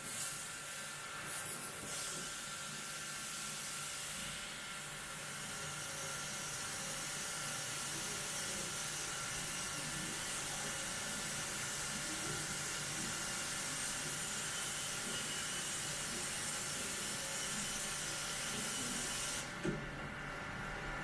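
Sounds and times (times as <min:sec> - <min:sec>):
cutting machine hissing: 0:05.0 - 0:19.6.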